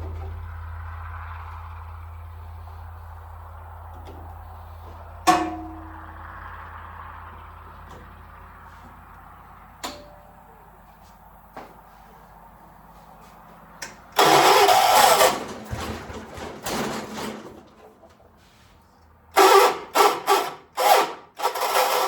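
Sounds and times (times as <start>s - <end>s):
starter cranking engine: 13.9s - 17.6s, 19.3s - 22.0s.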